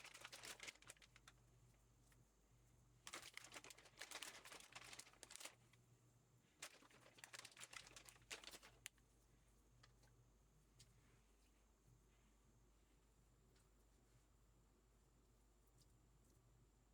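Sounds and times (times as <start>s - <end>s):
faint crinkling and clicking: 0.0s - 12.4s, 13.4s - 14.4s.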